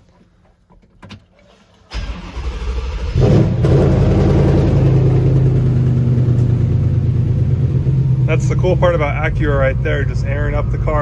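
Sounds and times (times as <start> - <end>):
engine starting and idling: 1.4 - 6.7.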